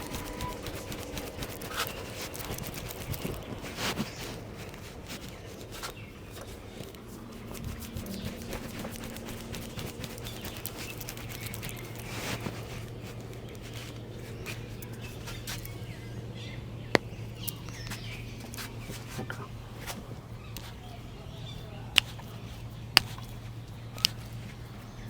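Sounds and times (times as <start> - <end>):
hands slapping and tapping: 0.0 - 15.7, 21.9 - 23.4
steady low hum: 0.0 - 25.0.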